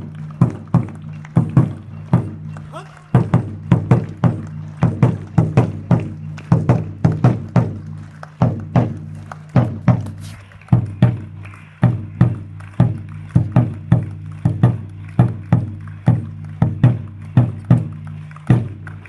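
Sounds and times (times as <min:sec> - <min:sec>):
drum beaten with ringing boom: 0:00.0 - 0:07.8.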